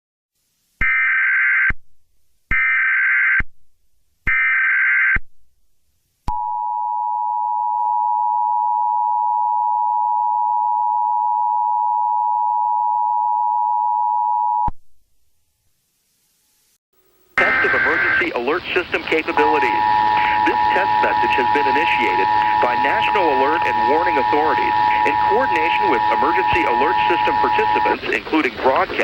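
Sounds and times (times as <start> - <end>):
two-tone attention signal: 17.4 - 28.8
screeching digital header bursts: 17.4 - 29.0.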